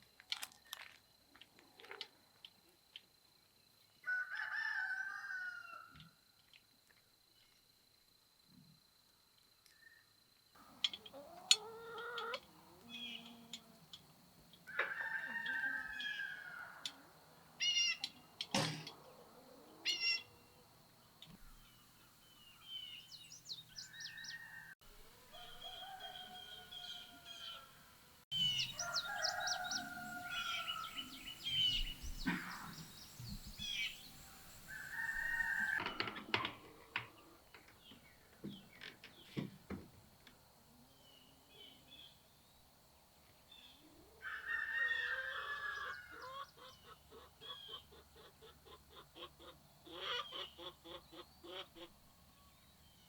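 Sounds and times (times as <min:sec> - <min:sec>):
rooster crowing: 0:04.0 - 0:05.9, 0:14.7 - 0:17.2, 0:23.9 - 0:31.7, 0:34.2 - 0:35.8, 0:44.2 - 0:46.5
small birds chirping: 0:10.6 - 0:14.8, 0:15.6 - 0:24.8, 0:25.4 - 0:35.8, 0:45.7 - 0:53.0
chickens clucking: 0:10.6 - 0:21.6, 0:45.2 - 0:52.0.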